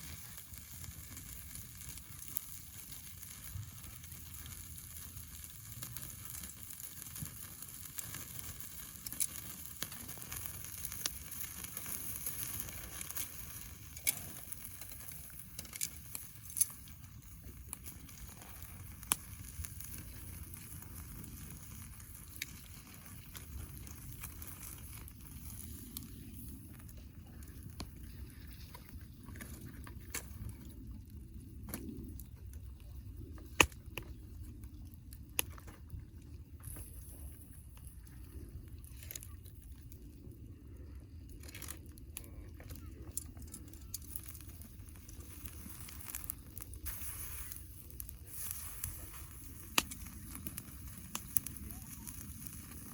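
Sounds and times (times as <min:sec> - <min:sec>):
steak sizzling on a grill: 0:00.0 - 0:26.8, 0:43.6 - 0:52.9
burning wood crackling: 0:00.0 - 0:52.9.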